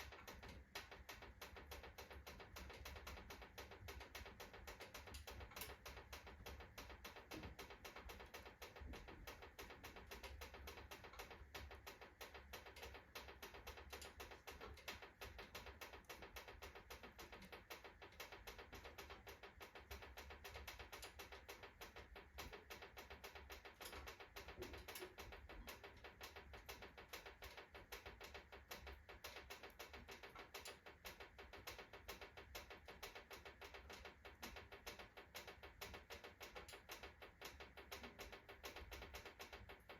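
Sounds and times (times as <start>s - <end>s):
fire crackling in a stove: 0.0s - 39.9s.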